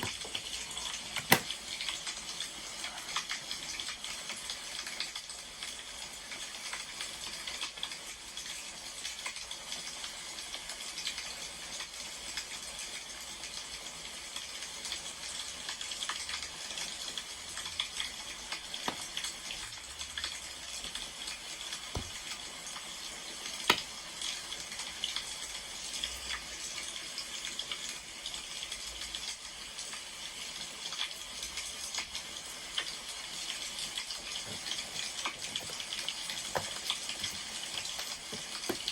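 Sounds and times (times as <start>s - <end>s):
wood fire crackling: 33.6s - 38.9s.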